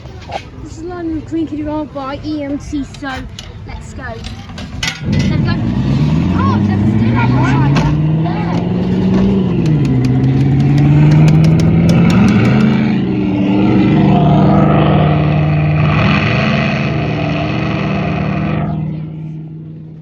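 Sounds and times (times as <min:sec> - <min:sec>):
race car engine sound effects: 0:04.5 - 0:20.0.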